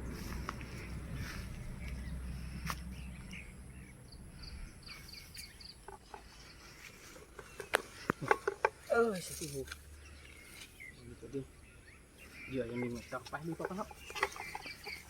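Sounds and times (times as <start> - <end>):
low rumbling noise: 0.0 - 5.8.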